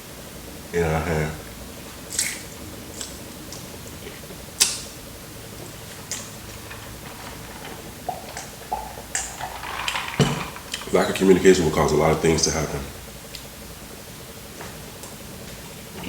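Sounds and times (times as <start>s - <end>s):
eating crunches: 2.0s - 5.0s.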